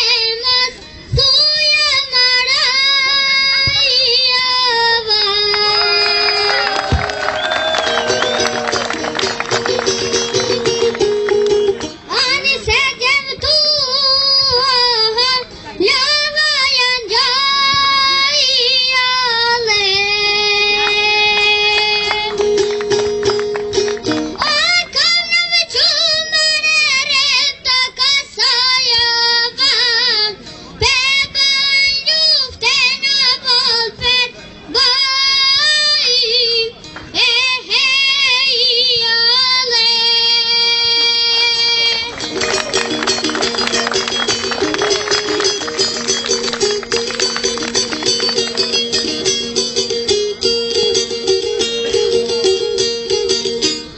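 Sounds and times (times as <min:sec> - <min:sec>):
boy singing: 0:00.0 - 0:06.5, 0:12.1 - 0:22.4, 0:24.4 - 0:42.1
musical accompaniment: 0:05.3 - 0:12.8, 0:20.6 - 0:24.8, 0:41.2 - 0:53.9.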